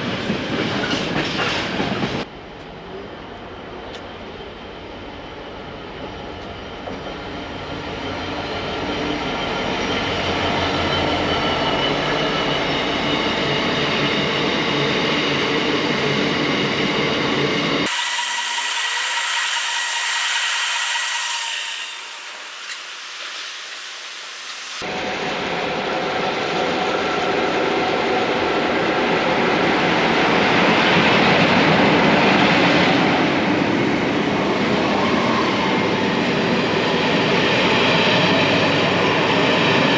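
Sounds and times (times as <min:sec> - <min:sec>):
train rumbling past: 0:00.0 - 0:24.8.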